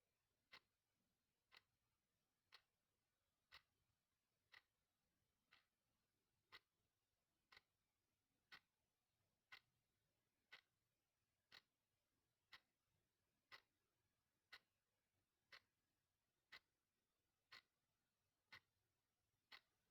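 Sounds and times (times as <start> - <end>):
clock ticking: 0.5 - 0.7, 1.5 - 1.7, 2.5 - 2.7, 3.5 - 3.8, 4.5 - 4.7, 5.5 - 5.7, 6.5 - 6.7, 7.5 - 7.7, 8.5 - 8.7, 9.5 - 9.7, 10.5 - 10.7, 11.5 - 11.7, 12.5 - 12.7, 13.5 - 13.8, 14.5 - 14.7, 15.5 - 15.7, 16.5 - 16.7, 17.5 - 17.7, 18.5 - 18.8, 19.5 - 19.9.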